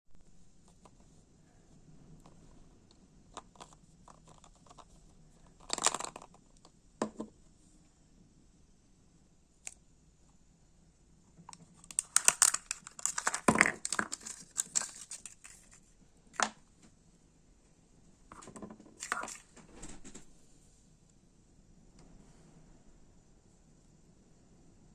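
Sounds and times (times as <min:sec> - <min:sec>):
packaging rustling and tearing: 0:11.8 - 0:15.8, 0:19.0 - 0:19.5.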